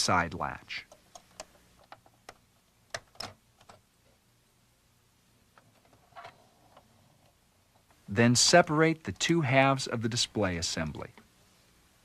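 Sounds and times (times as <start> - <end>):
faint clicks and taps: 0.8 - 4.2.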